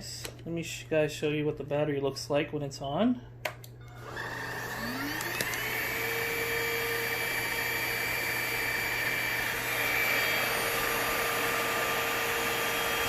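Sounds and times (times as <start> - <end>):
vacuum motor whining: 3.8 - 13.0.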